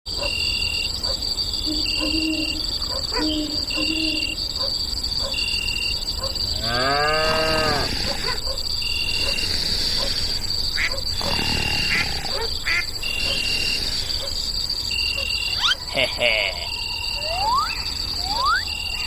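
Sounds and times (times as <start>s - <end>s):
cow mooing: 6.6s - 8.4s, 9.0s - 14.3s
steady high whine: 7.6s - 19.0s
short high beeps: 16.9s - 19.0s.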